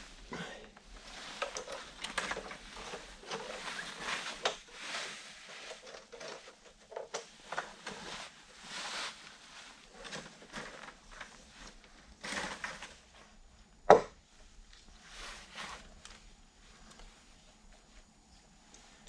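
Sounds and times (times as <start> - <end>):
handling knocks and scraping: 0.0 - 13.1.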